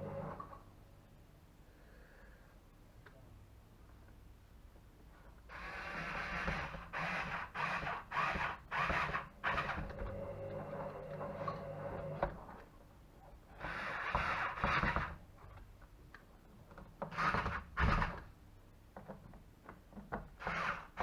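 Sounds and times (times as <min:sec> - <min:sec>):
low steady hum: 0:00.0 - 0:05.0.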